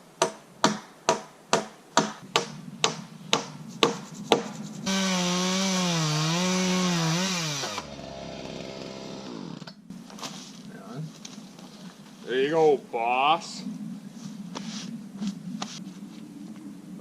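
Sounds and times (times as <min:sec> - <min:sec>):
chainsaw running: 0:04.9 - 0:09.7.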